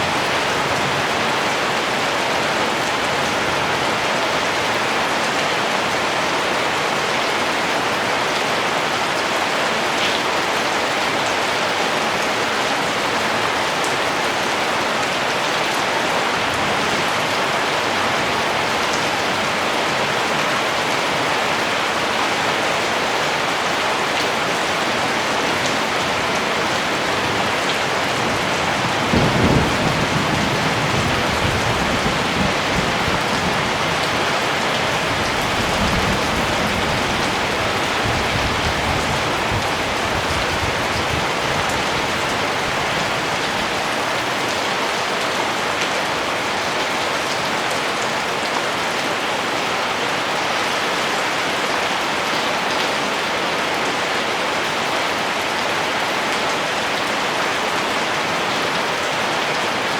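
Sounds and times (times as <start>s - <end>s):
heavy rain falling: 0.0s - 59.9s
low rumble of thunder: 28.4s - 34.1s.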